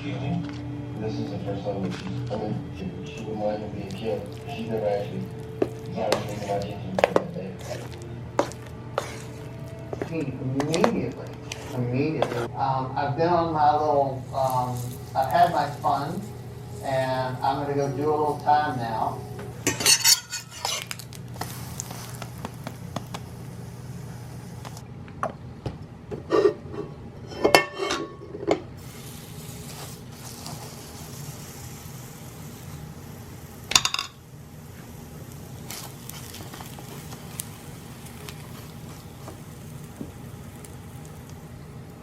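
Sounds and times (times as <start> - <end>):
low steady hum: 0.0 - 42.0
utensils clinking on pans and dishes: 3.8 - 12.5, 14.3 - 21.2, 26.2 - 28.7, 33.7 - 34.2.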